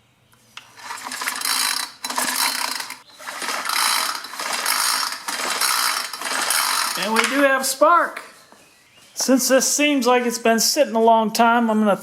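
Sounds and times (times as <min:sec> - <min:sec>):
engine spinning over: 0:00.6 - 0:07.3
recoil pull-starter pulled: 0:00.6 - 0:07.4.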